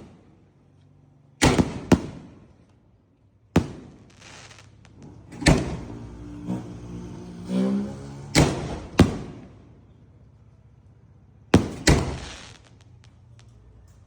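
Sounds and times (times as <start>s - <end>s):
firework bangs: 1.4s - 2.6s, 3.5s - 6.7s, 8.3s - 9.8s, 11.5s - 13.8s
firework hissing trail: 3.8s - 6.6s, 11.7s - 13.2s.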